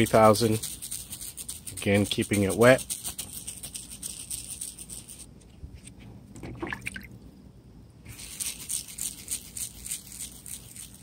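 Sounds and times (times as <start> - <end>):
wet sandpaper rubbing plastic: 0.0 - 5.3, 8.1 - 11.0.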